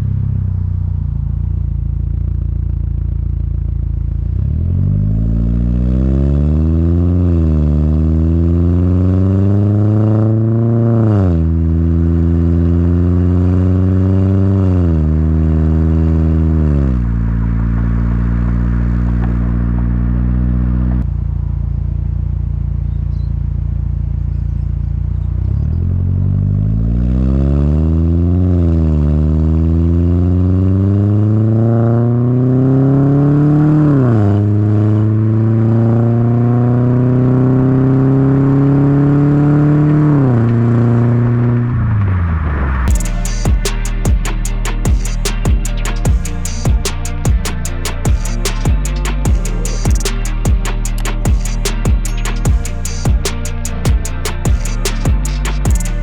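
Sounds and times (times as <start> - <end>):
car engine accelerating: 0.0 - 56.0.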